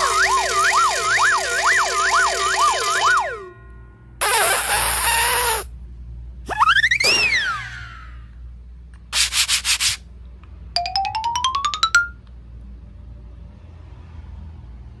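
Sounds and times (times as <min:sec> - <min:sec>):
short scratchy rasp: 0:04.2 - 0:05.7, 0:09.2 - 0:10.0
clicks rising in pitch: 0:10.8 - 0:12.3.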